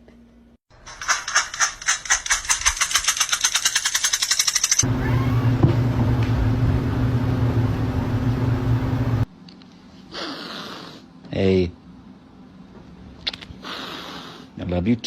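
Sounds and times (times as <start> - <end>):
low motor hum: 4.8 - 9.3.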